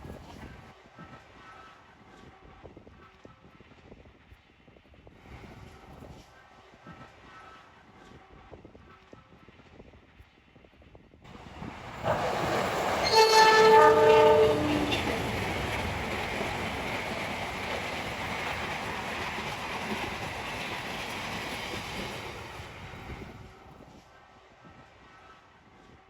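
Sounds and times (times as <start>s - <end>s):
train wheels rumbling on rails: 11.3s - 24.0s
train horn: 12.0s - 15.7s.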